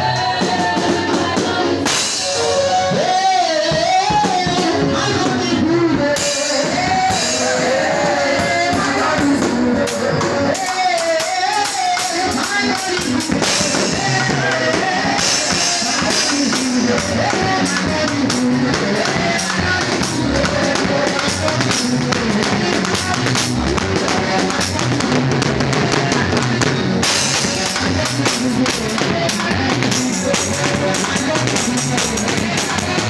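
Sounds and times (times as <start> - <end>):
choir singing: 0.0 - 4.2, 4.8 - 32.8
drum kit: 0.0 - 33.0
guitar: 0.0 - 33.0.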